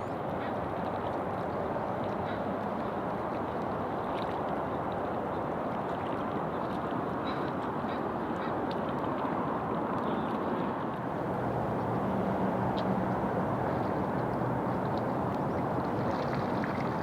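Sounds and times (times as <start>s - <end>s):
steady rushing noise: 11.0s - 17.0s.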